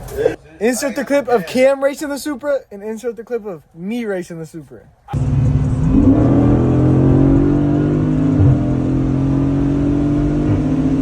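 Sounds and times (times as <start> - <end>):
car engine revving high: 5.2 - 11.0.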